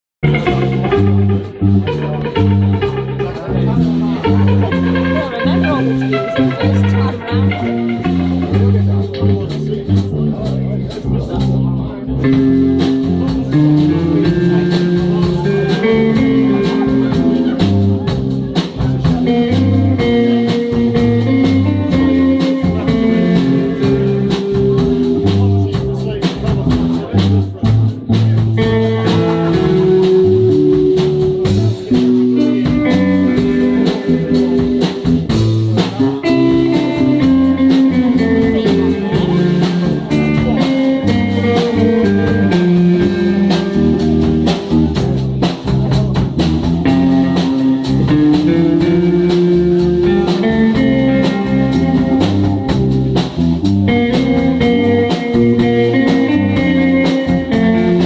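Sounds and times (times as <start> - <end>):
live blues guitar music: 0.2 - 58.0.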